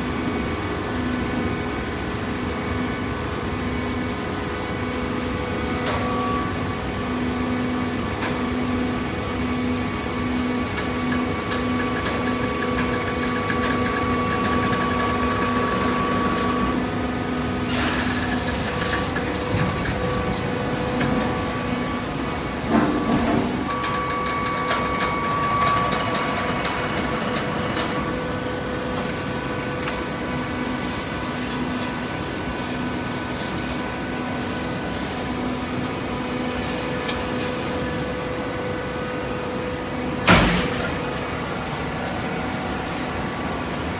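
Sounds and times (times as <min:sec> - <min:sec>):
baler machine humming: 0:04.8 - 0:31.4
loud metal clank: 0:40.3 - 0:41.4.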